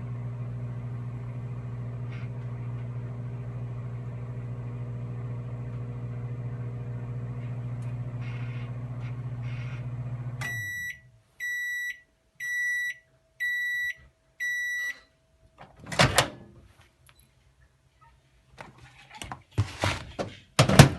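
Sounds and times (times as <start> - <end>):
microwave oven humming: 0.0 - 11.7
microwave beeps: 10.4 - 15.1.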